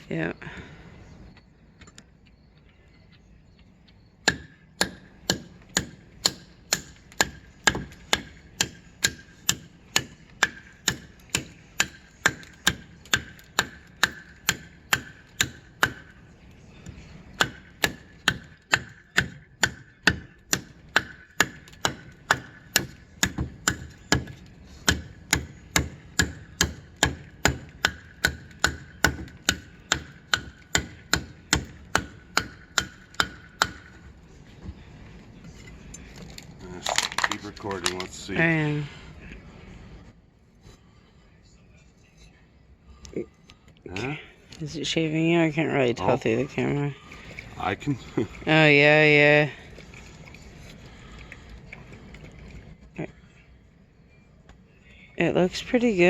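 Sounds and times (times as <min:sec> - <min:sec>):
hammer striking steel on anvil: 0:04.2 - 0:16.2, 0:17.4 - 0:34.0.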